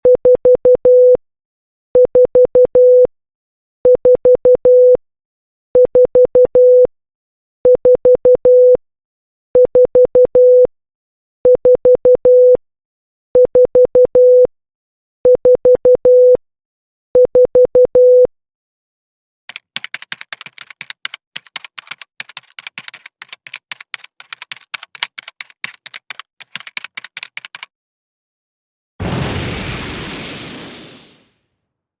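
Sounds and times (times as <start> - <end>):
morse code beeps: 15.4 - 16.4
rapid irregular clicking: 19.5 - 27.7.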